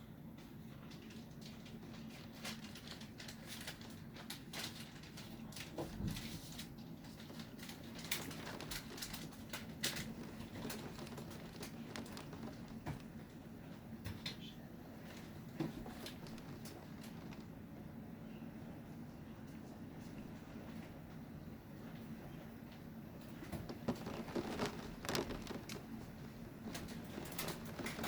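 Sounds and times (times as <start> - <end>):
faint low hum: 0.0 - 28.0
raindrops pattering: 0.9 - 17.9, 23.2 - 28.0.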